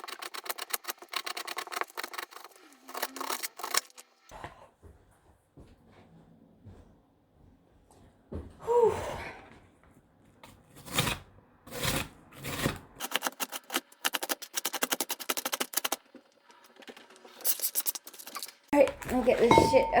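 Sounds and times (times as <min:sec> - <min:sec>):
knife scraping onion on board: 0:10.5 - 0:16.0.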